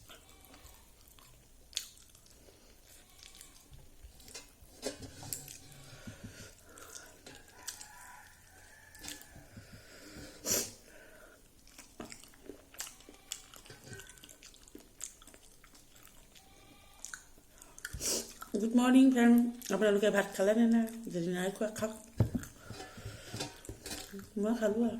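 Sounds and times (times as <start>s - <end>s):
chewing and crunching: 0.0s - 9.5s, 11.0s - 21.2s.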